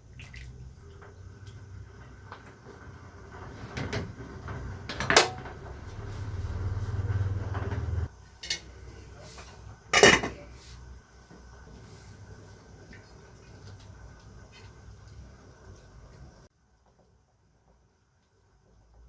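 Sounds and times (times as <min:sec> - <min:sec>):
cookware and dishes knocking: 0:10.0 - 0:10.4.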